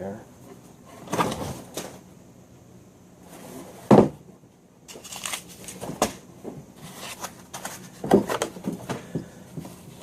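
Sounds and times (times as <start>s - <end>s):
thump: 3.9s - 4.2s
cardboard box rustling and scraping: 6.8s - 8.4s.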